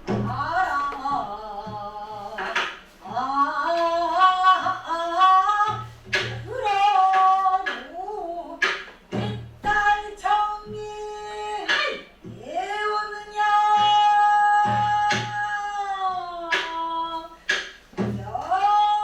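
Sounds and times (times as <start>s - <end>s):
low barrel drum strokes: 0.0s - 8.3s.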